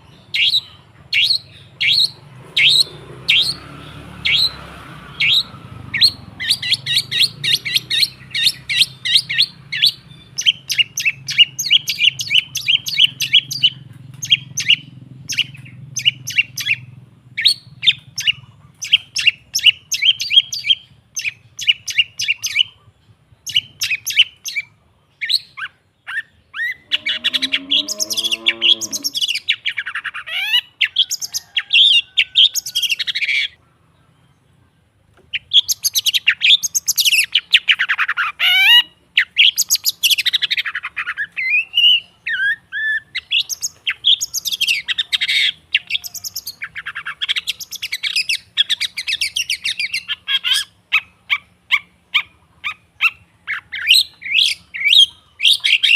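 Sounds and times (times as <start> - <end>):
bird chattering song: 0.0 - 55.9
low wavering bird warble: 26.6 - 29.5.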